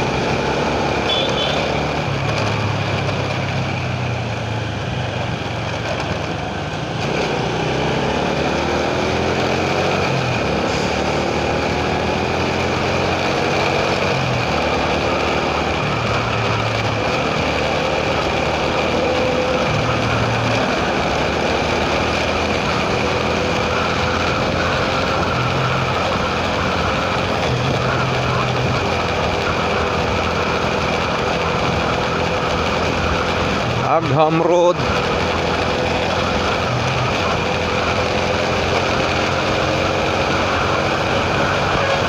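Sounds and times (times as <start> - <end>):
vehicle engine and road noise: 0.0 - 42.0.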